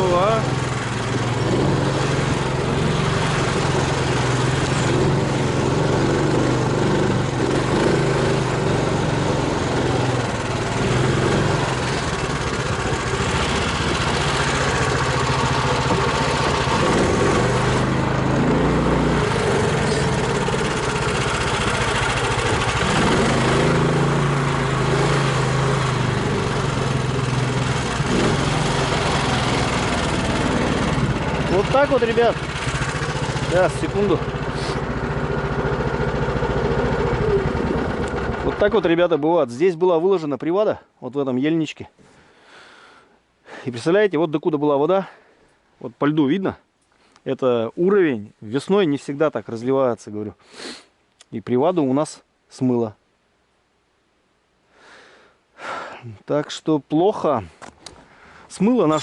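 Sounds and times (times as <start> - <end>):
vehicle engine running: 0.0 - 39.3.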